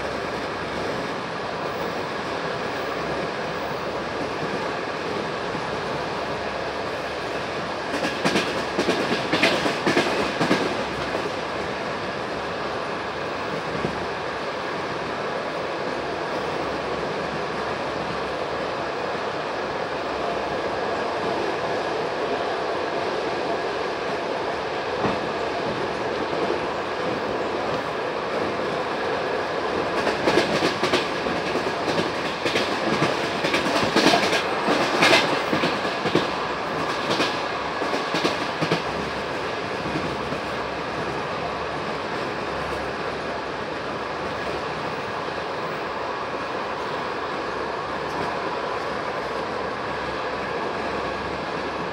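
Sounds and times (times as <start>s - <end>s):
train coach rumbling: 0.0s - 51.9s.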